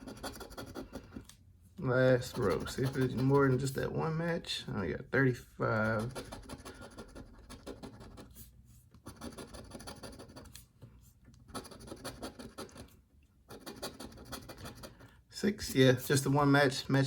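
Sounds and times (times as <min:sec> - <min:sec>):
rapid scratching of lottery ticket: 0:00.0 - 0:01.3, 0:02.2 - 0:03.7, 0:05.7 - 0:10.6, 0:11.5 - 0:15.1.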